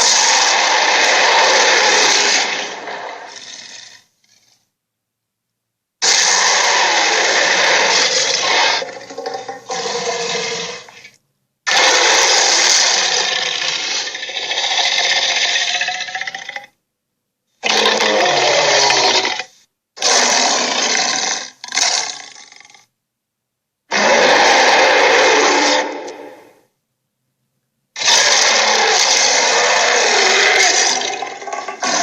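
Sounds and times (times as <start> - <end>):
dragon roars: 0.0 - 4.0, 6.0 - 11.0, 17.6 - 22.4, 23.9 - 26.6, 28.0 - 32.0.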